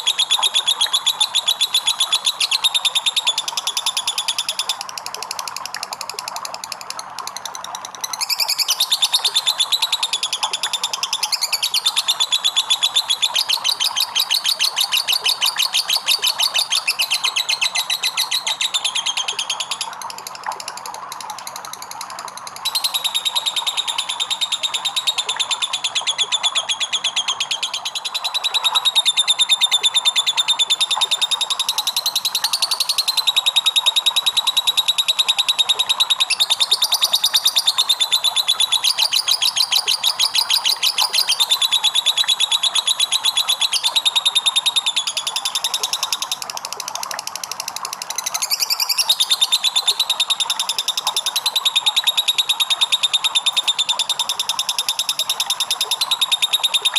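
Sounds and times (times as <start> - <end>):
bird chattering trill: 8.1 - 20.0, 22.7 - 33.4, 48.2 - 56.9.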